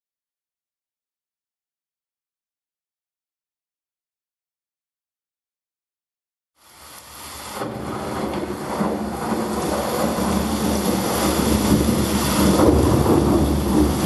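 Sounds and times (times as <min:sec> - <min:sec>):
low rumbling storm-like music: 0:07.6 - 0:14.0.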